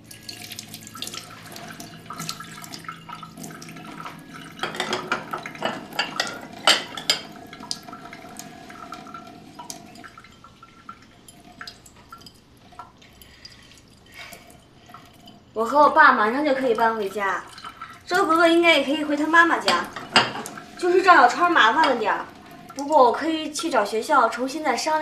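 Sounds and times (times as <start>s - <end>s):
water running into a sink: 0.0s - 25.0s
dishes clinking and clattering: 1.4s - 15.5s, 18.9s - 22.9s.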